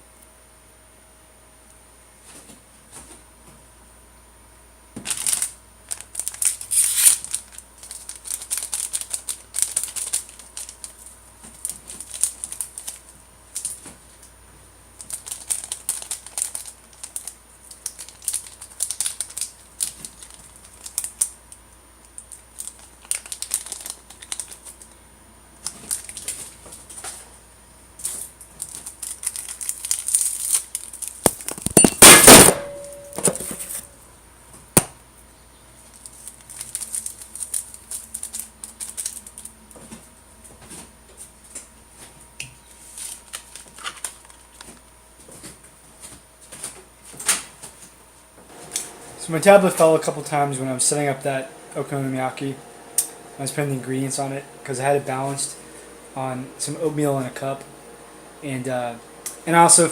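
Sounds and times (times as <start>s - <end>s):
plastic packaging crinkling: 5.0s - 14.0s, 15.0s - 21.4s, 22.1s - 25.0s, 25.6s - 27.2s, 28.0s - 31.8s, 35.8s - 39.8s, 42.8s - 44.9s, 48.5s - 56.2s.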